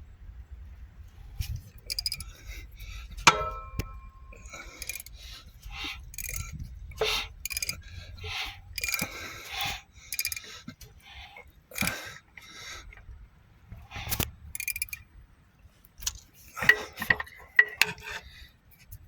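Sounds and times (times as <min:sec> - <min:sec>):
sharp ringing clang: 0:03.3 - 0:05.0.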